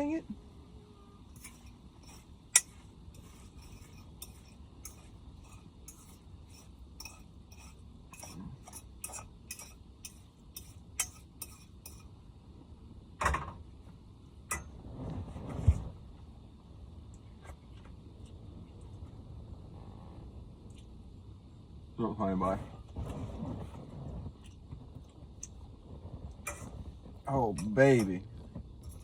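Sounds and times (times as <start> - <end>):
fork clinking against a pan: 1.4 - 12.1.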